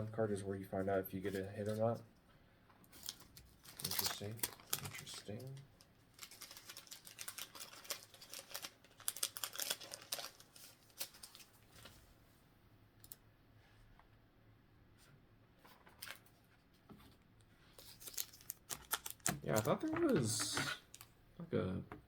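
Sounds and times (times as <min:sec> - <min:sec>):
trading cards clicking and rustling: 0:03.0 - 0:11.5, 0:17.8 - 0:21.1.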